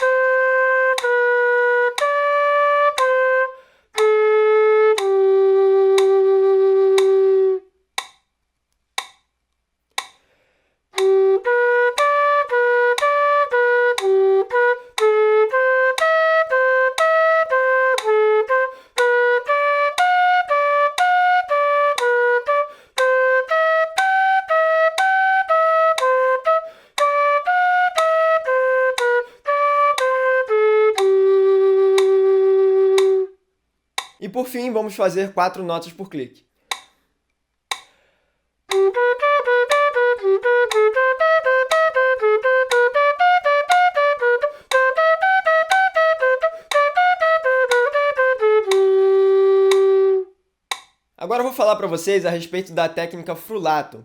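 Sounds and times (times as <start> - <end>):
metronome clicking: 0.0 - 3.4, 4.0 - 7.3, 8.0 - 9.3, 9.9 - 10.3, 11.0 - 32.3, 32.9 - 33.2, 34.0 - 34.7, 35.4 - 37.0, 37.7 - 38.0, 38.7 - 50.0, 50.7 - 53.8
quena flute playing: 0.0 - 7.8, 11.0 - 33.5, 38.7 - 50.4.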